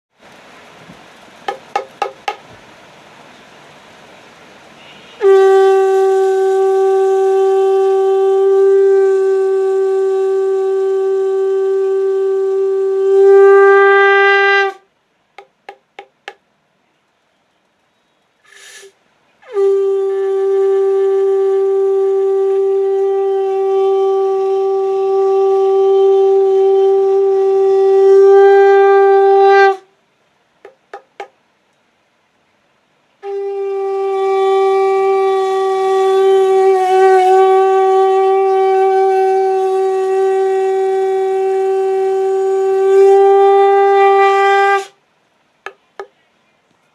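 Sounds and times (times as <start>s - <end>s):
conch shell blasts: 4.8s - 14.8s, 18.6s - 29.9s, 33.2s - 45.0s.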